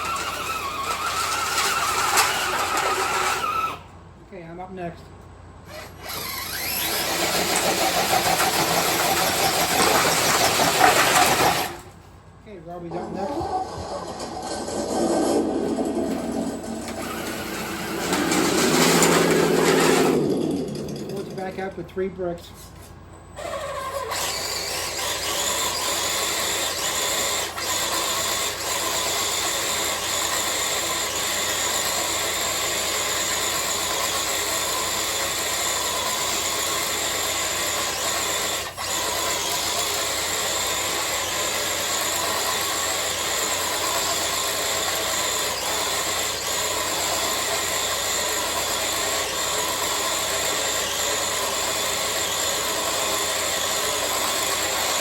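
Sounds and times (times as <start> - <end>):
toy truck electric motor running: 0.0 - 3.8, 5.7 - 11.9, 13.5 - 21.5, 23.4 - 55.0.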